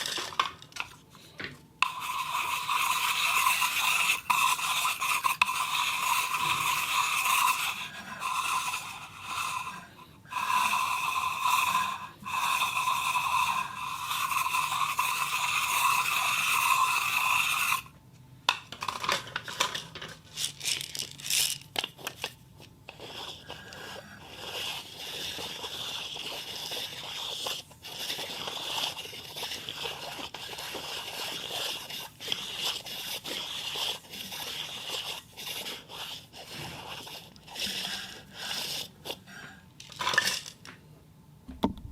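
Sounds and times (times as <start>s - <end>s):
ball rolling inside a cup: 1.8s - 17.9s, 18.7s - 40.7s
clicks and taps: 41.5s - 41.9s.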